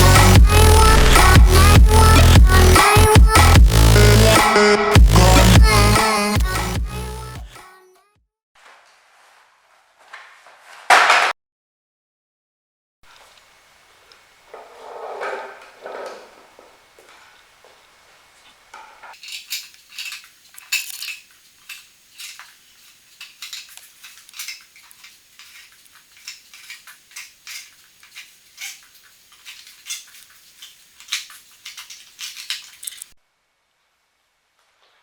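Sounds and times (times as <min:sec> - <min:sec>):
plastic objects clicking and clattering: 0:14.6 - 0:17.4, 0:18.8 - 0:33.2.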